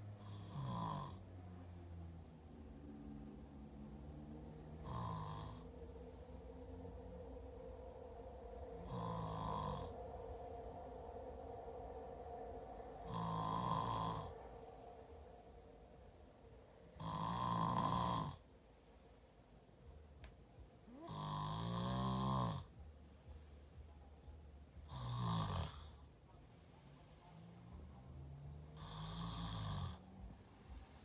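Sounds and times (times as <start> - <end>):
man snoring: 0.0 - 2.4, 4.2 - 6.8, 8.5 - 10.8, 12.7 - 15.4, 16.8 - 18.4, 20.9 - 23.6, 24.8 - 26.0, 26.9 - 31.0.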